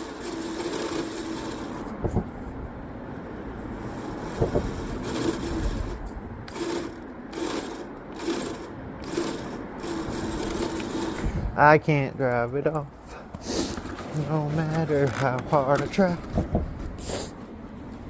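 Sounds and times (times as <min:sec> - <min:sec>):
electric motor whining: 0:00.0 - 0:01.9, 0:04.0 - 0:11.5.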